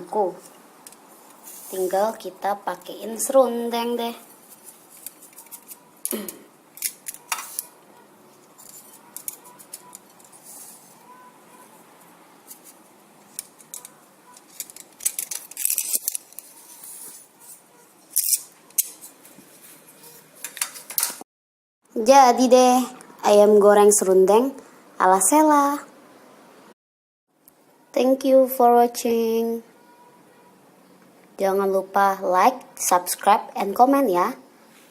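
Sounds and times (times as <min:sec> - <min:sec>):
scratchy rustles: 0:04.2 - 0:05.9, 0:07.2 - 0:12.9, 0:13.6 - 0:18.4.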